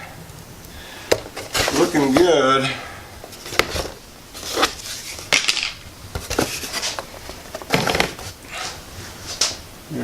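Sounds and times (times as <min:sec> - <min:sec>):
foam parts knocking and clicking: 0:01.1 - 0:02.3.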